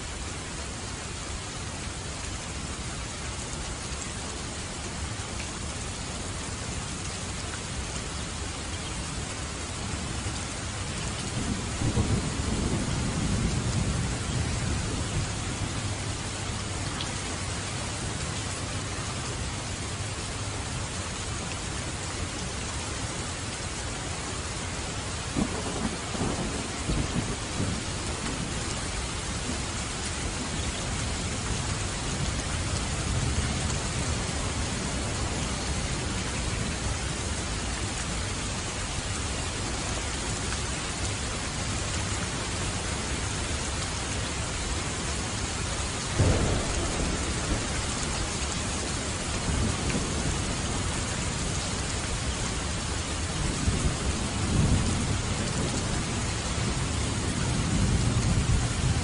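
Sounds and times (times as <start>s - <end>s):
heavy rain falling: 0.0s - 59.0s
thunder rumbling: 11.3s - 16.2s, 25.4s - 29.7s, 46.1s - 59.0s
sharp thunderclap: 46.2s - 48.2s.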